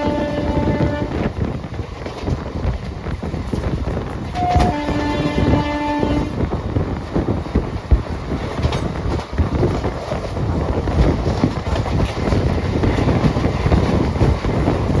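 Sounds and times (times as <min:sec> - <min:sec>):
train wheels rumbling on rail: 0:00.0 - 0:15.0.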